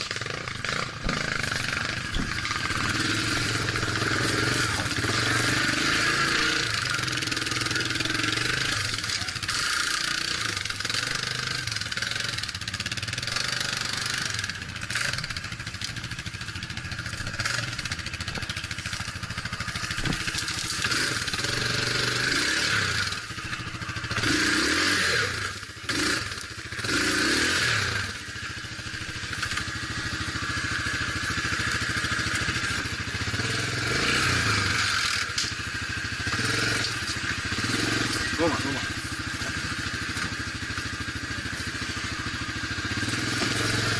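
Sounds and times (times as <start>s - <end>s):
off-road vehicle engine running: 0.0s - 43.9s
wind and road noise: 14.1s - 27.4s.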